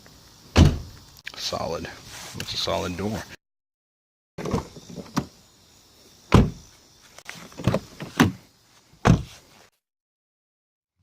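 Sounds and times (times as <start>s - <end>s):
car doors shutting with thuds: 0.5s - 1.0s, 6.3s - 6.7s, 7.4s - 8.4s, 9.0s - 9.4s.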